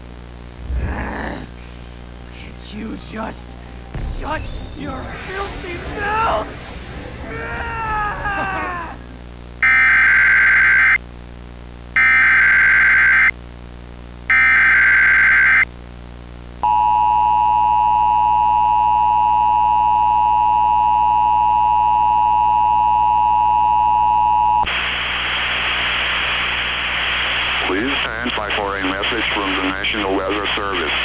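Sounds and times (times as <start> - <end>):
static hiss: 0.0 - 9.6, 24.7 - 31.0
digital header bursts: 2.1 - 8.0.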